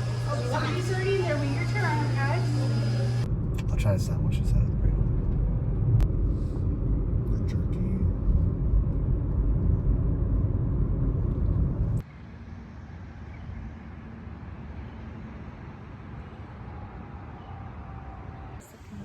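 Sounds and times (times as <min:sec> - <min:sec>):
vehicle road noise rumble: 0:02.7 - 0:16.8.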